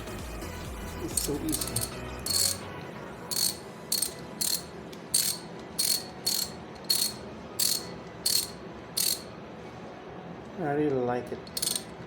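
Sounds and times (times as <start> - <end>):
ratchet clicking: 1.2 - 2.6, 3.3 - 9.3, 11.4 - 12.0.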